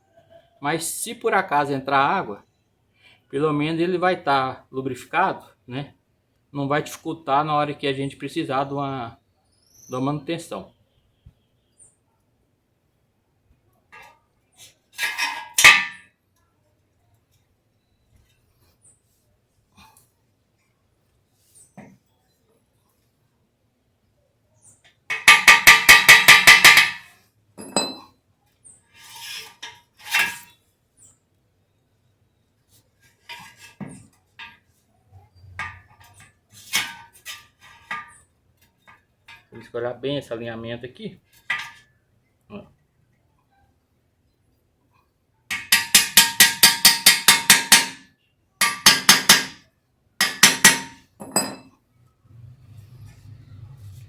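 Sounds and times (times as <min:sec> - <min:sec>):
metal parts scraping: 0:14.9 - 0:16.0, 0:28.9 - 0:30.6
metal-on-metal taps: 0:25.1 - 0:28.0, 0:45.5 - 0:48.0
metal clink: 0:27.6 - 0:28.1, 0:50.2 - 0:51.7.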